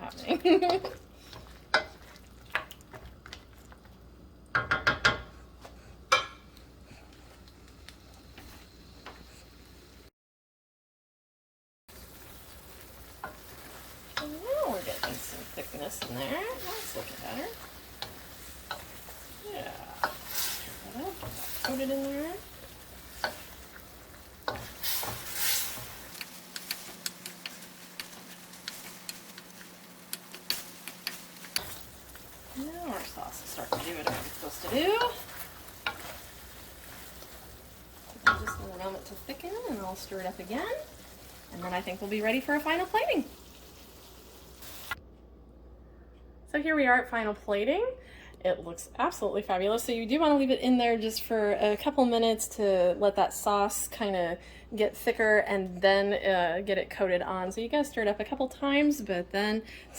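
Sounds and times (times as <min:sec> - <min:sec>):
quiet sizzle: 0:00.0 - 0:10.1, 0:11.9 - 0:59.9
spoon scraping a wok: 0:13.2 - 0:26.1, 0:30.3 - 0:42.0
spoon scraping in a wok: 0:13.2 - 0:29.0.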